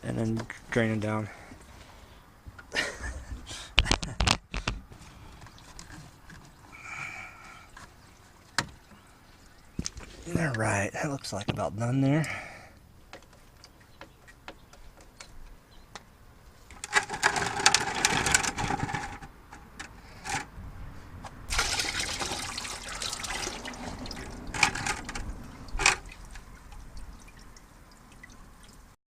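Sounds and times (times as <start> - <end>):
short splashes: 21.5 - 24.6
liquid pouring and splashing: 21.5 - 29.0.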